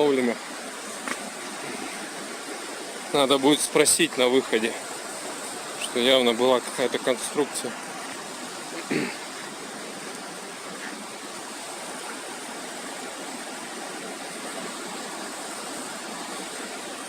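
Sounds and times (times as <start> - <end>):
waterfall rushing water: 0.0 - 17.0.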